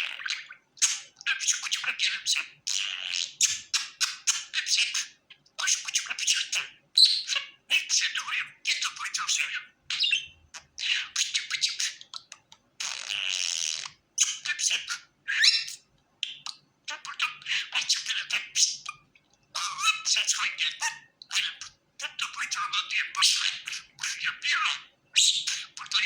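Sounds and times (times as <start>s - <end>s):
budgerigar chattering and chirping: 0.0s - 26.0s.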